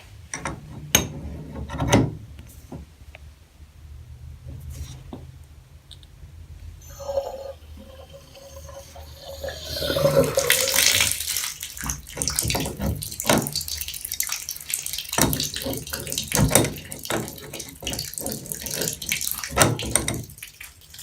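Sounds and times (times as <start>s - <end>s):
thin whistling tone: 6.8s - 11.2s
water splashing: 6.8s - 19.6s
water hissing from faucet valve: 6.8s - 21.0s.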